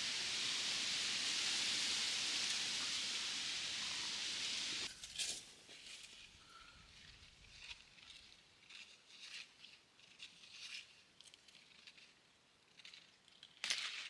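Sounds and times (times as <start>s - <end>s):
steady outdoor hiss: 0.0s - 13.2s
faint rustles and clicks: 4.9s - 14.0s.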